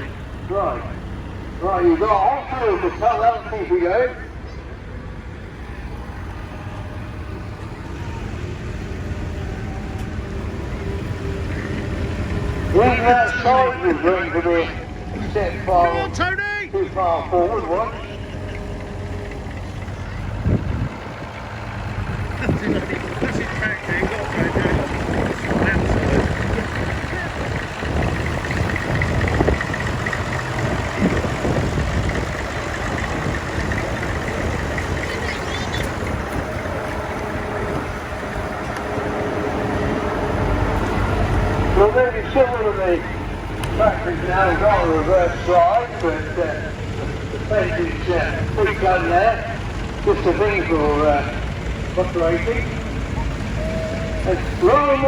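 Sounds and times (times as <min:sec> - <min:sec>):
tractor engine rumbling: 0:00.0 - 0:55.0.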